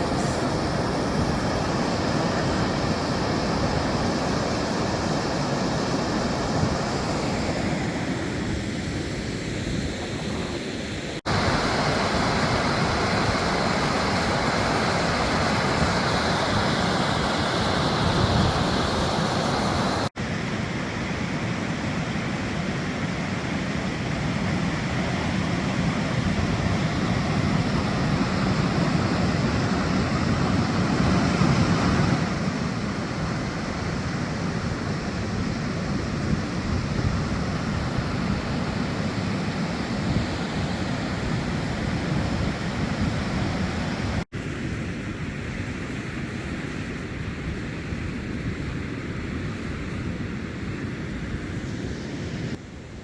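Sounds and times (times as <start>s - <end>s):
flooded river rushing: 0.0s - 53.0s
wind on microphone: 0.0s - 53.0s.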